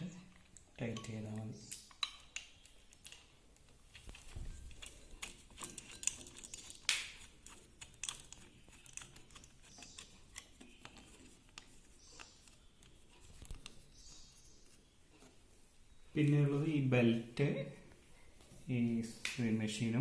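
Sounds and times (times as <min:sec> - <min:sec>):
light metallic clicks and taps: 0:00.4 - 0:04.2.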